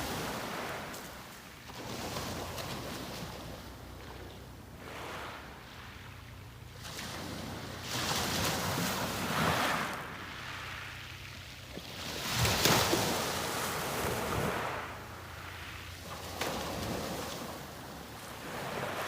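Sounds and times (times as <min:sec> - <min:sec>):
sea waves breaking on beach: 0:00.0 - 0:19.0.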